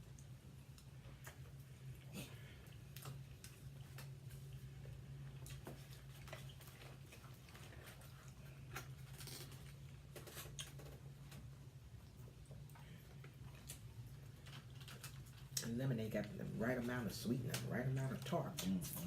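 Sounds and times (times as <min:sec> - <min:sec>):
steady low hum: 0:00.0 - 0:19.0
chewing food clicks and crackles: 0:02.6 - 0:15.7.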